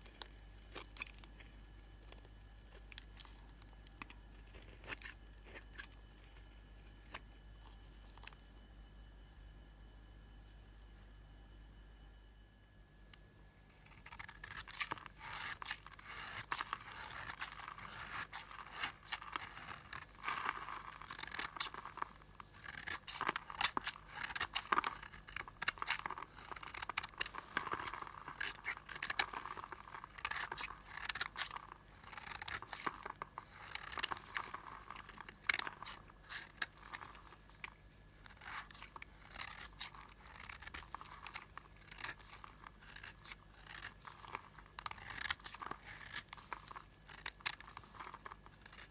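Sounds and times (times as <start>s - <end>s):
blade scraping hard soap: 13.8s - 48.9s.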